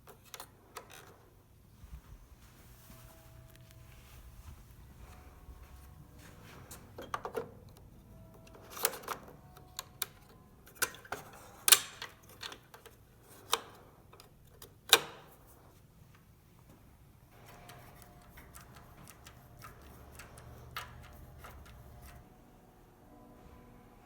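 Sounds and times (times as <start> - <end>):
printer parts clicking and knocking: 6.6 - 15.3, 17.3 - 22.2.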